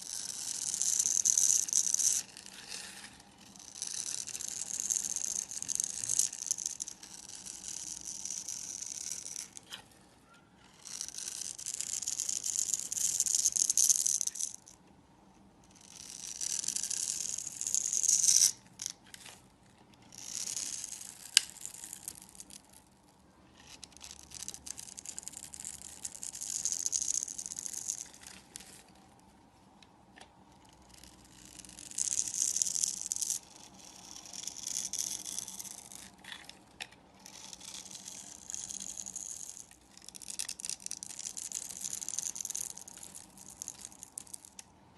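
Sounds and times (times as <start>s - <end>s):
knife shaving soap: 0.0s - 13.9s, 20.0s - 27.0s, 30.7s - 39.2s, 39.8s - 44.3s.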